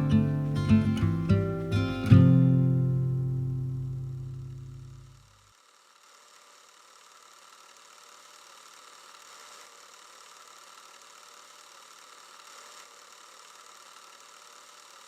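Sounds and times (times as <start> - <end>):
film camera whirring: 5.1 - 15.0.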